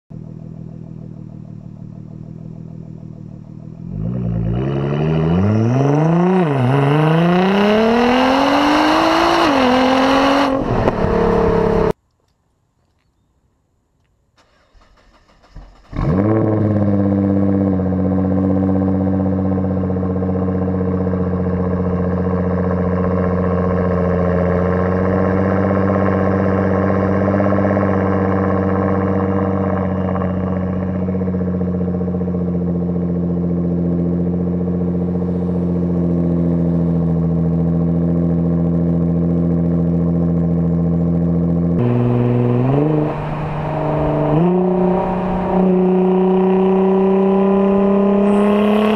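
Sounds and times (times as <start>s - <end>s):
car engine cold start and idle: 0.1s - 4.4s, 14.4s - 25.1s
engine revving: 3.8s - 12.0s, 14.4s - 40.4s, 41.5s - 48.9s.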